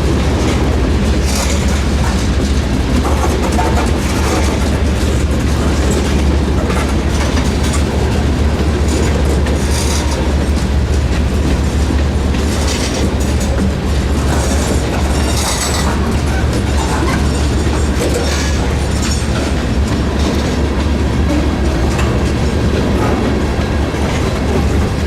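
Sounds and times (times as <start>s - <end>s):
freight train rumbling past: 0.0s - 25.0s
wheel clicks over rail joints: 0.1s - 25.0s.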